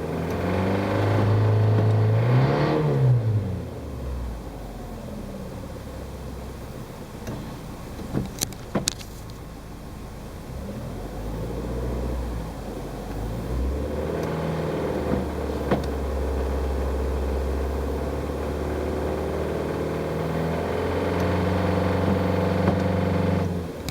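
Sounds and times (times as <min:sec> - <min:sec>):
car engine revving with rattle: 0:00.0 - 0:23.9.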